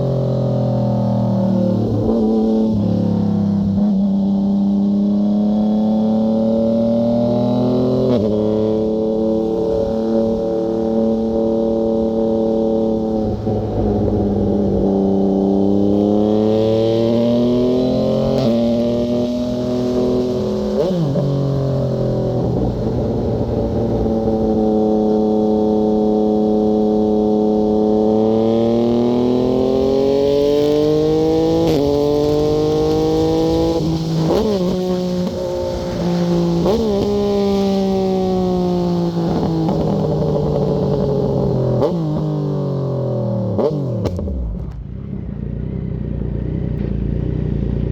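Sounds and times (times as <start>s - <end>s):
motorcycle engine revving: 0.0s - 47.9s.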